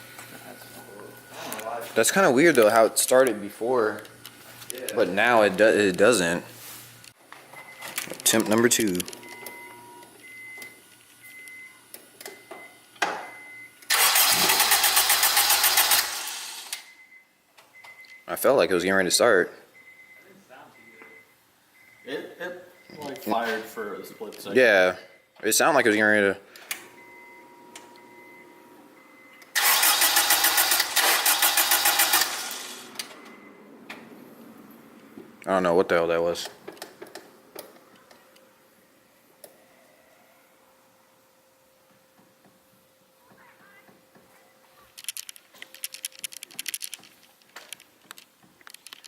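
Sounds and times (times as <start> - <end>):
car engine cranking on starter: 13.9 - 16.9, 29.5 - 33.1.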